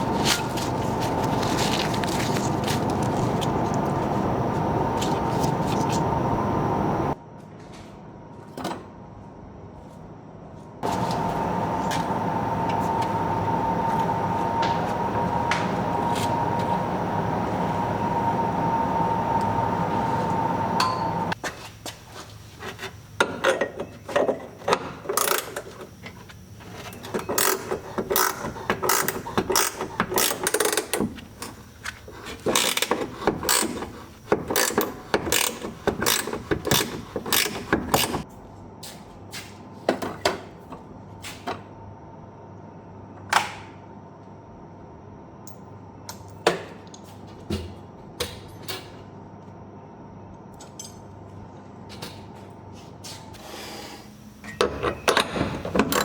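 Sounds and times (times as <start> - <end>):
loud mechanical noise: 0.0 - 7.2, 10.8 - 21.4, 23.8 - 38.2.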